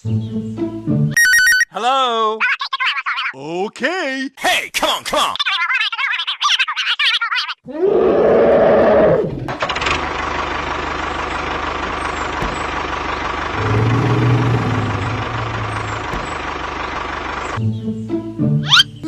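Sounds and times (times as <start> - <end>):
engine starting and running: 9.2 - 17.6.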